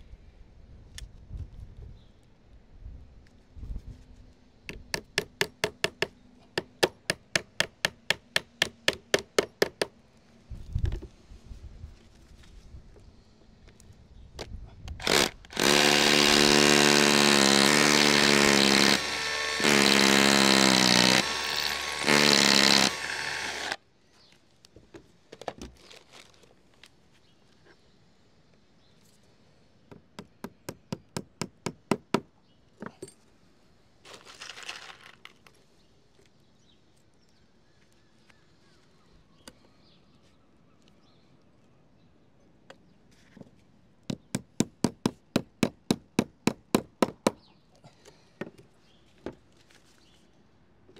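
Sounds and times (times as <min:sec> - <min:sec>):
power tool motor running: 0:15.0 - 0:23.8.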